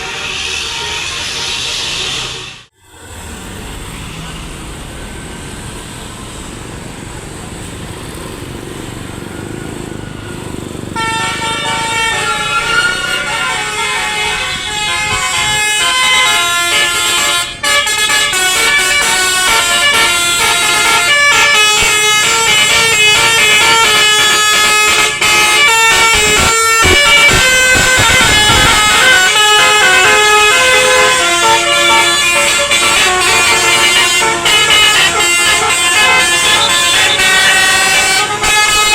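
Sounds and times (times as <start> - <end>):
musical air horn tune: 0.0 - 2.7, 11.0 - 38.9.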